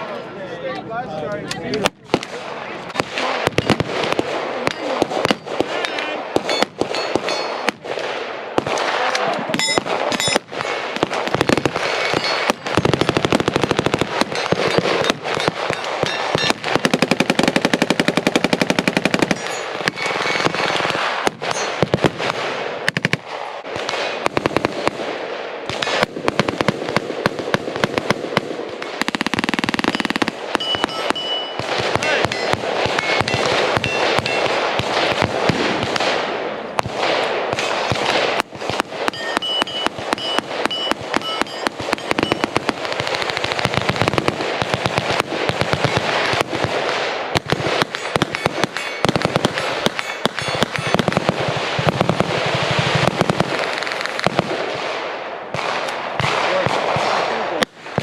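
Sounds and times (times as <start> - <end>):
gunshots from several guns: 1.6 - 58.0
full-auto gunfire burst: 1.8 - 58.0.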